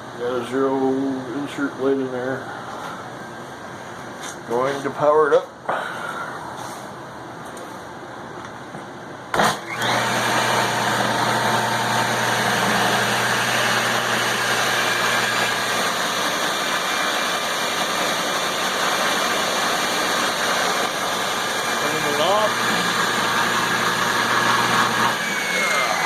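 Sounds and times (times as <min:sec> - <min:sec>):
table saw running: 0:09.4 - 0:26.0.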